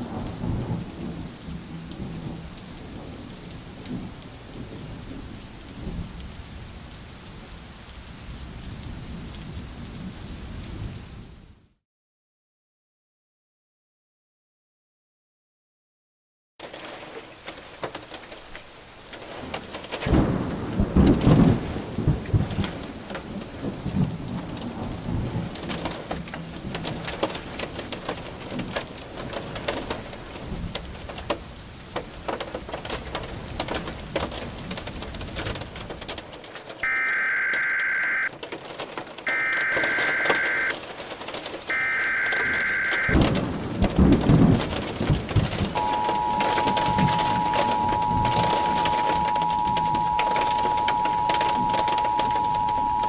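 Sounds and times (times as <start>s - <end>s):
rolling thunder: 0.0s - 6.8s, 19.2s - 31.2s, 41.6s - 53.0s
heavy rain: 0.0s - 11.8s, 16.6s - 53.0s
buzzy data bursts: 39.3s - 40.7s.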